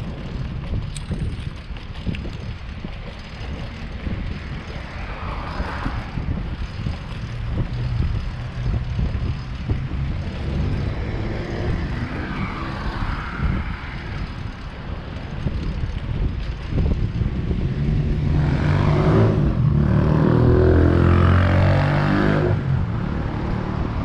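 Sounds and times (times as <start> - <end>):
street traffic rumble: 0.0 - 24.0
wind buffeting microphone: 0.0 - 24.0.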